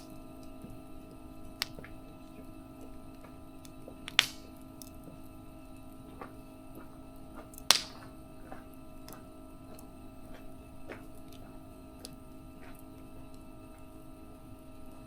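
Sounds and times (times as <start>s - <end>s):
faint steady hum: 0.0s - 15.0s
wood fire crackling: 0.0s - 15.0s
loud sharp snap: 4.1s - 4.5s, 7.7s - 8.1s.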